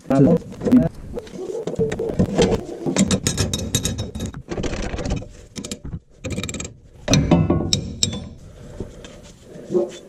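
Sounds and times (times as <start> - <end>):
small steel parts clinking: 3.0 - 4.4.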